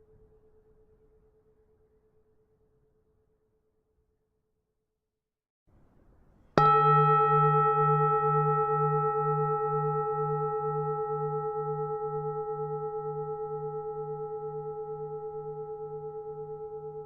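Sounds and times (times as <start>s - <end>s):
temple bell ringing: 6.6s - 17.0s.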